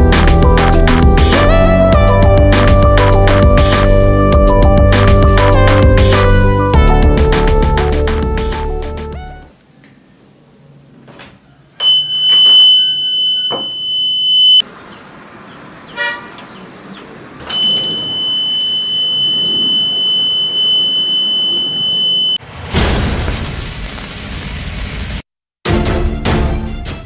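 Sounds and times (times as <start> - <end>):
alarm buzzer high-pitched tone: 11.8 - 14.6, 17.5 - 22.4.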